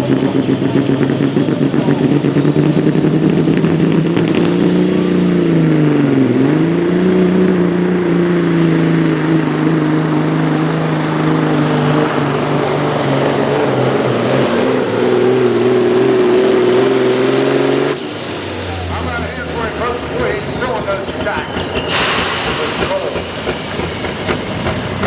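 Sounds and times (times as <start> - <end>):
diesel truck engine under load: 0.0 - 25.0.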